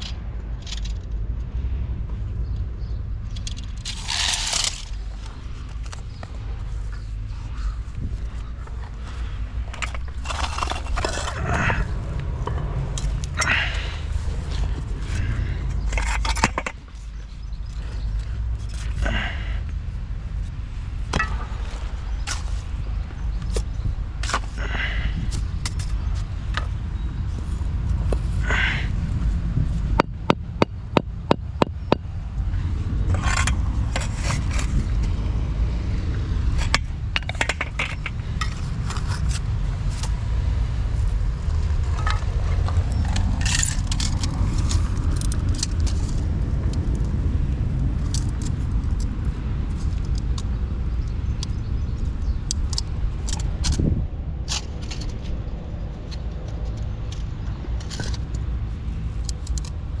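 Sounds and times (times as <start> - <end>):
low rumble: 0.0 - 60.0
scraping and clinking of hand work: 3.4 - 6.0, 8.8 - 11.9, 13.0 - 17.0, 33.1 - 35.1, 36.6 - 40.2, 41.9 - 46.2.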